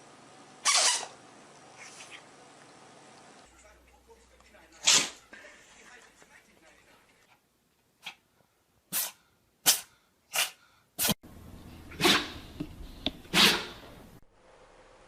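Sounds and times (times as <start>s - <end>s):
pet sneezing: 0.6s - 1.1s, 4.8s - 5.2s, 8.9s - 11.2s, 11.9s - 12.4s, 13.3s - 13.8s.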